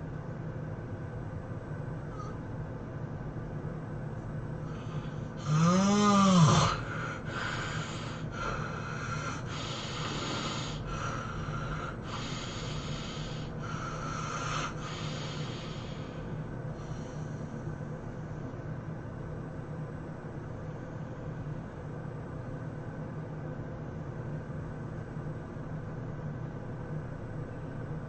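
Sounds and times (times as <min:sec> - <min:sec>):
person snoring: 0:04.7 - 0:17.3
airy rasping breaths: 0:04.7 - 0:17.5.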